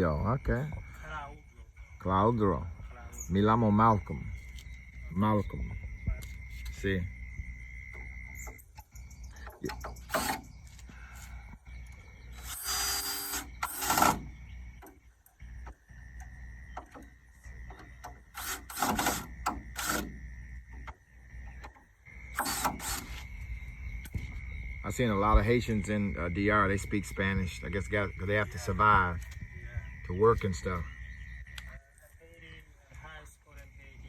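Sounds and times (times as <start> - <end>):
high insect chirr: 0.0 - 34.0
power drill driving screws: 9.6 - 10.5, 12.4 - 14.3, 18.0 - 20.2, 22.3 - 23.2.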